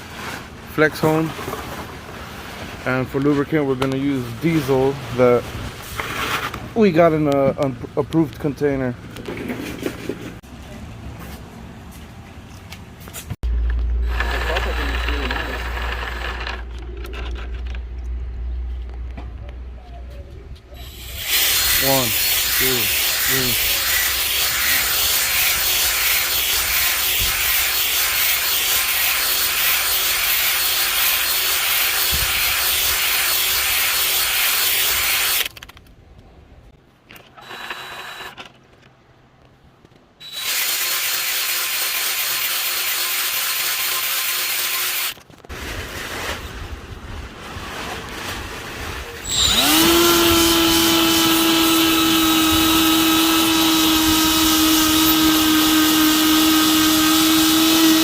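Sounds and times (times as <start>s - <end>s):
motor high whine: 13.4s - 18.1s, 49.2s - 58.0s
power drill honing cylinder: 14.0s - 16.7s, 20.8s - 35.5s, 37.4s - 38.4s, 40.2s - 45.2s, 49.2s - 58.0s.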